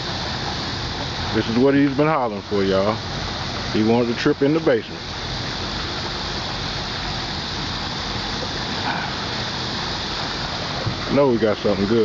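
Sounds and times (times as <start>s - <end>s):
fast river current rushing: 5.0s - 12.0s.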